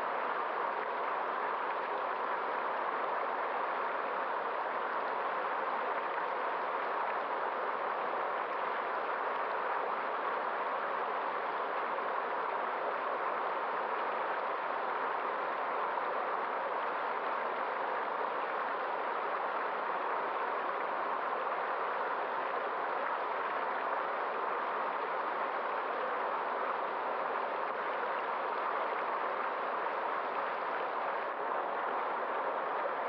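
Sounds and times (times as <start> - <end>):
flowing stream: 0.0 - 33.0
stream rushing: 19.9 - 33.0.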